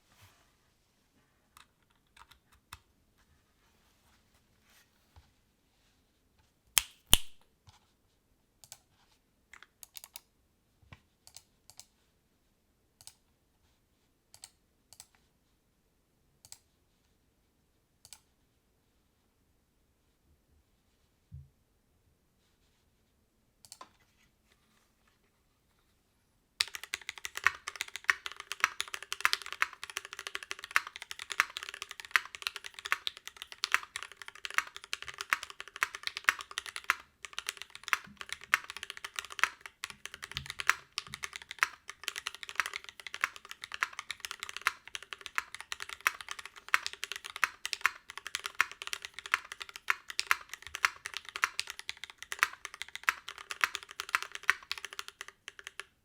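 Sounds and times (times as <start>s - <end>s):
fast typing on mechanical keyboard: 26.6s - 56.0s.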